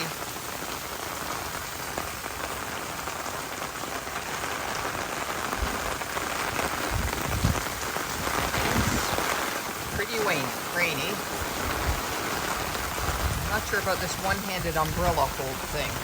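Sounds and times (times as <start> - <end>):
heavy rain pattering: 0.0 - 16.0
wind buffeting microphone: 5.4 - 16.0.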